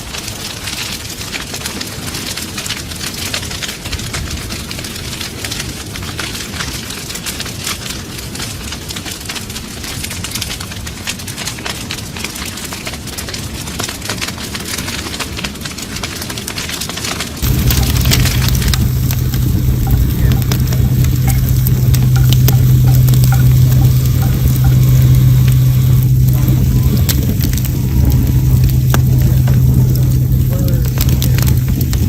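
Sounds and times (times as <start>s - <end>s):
wood fire crackling: 0.0s - 32.0s
low rumble: 17.4s - 32.0s
steady hiss: 17.4s - 32.0s.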